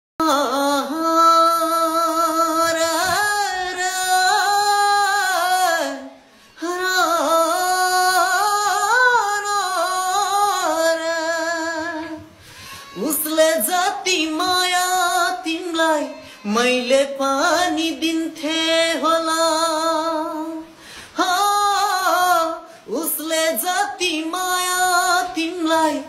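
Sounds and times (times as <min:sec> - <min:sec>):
high voice singing wordless melody: 0:00.2 - 0:26.0.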